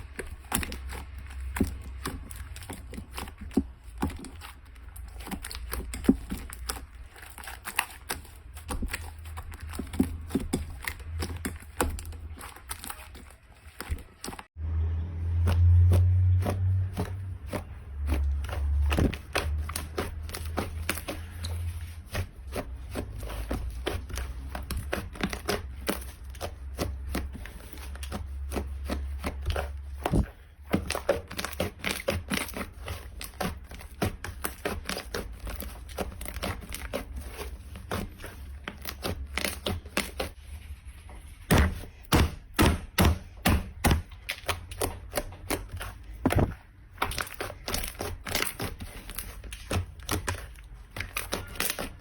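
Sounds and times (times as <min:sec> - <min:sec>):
slime crackling and popping: 0:41.5 - 0:52.0.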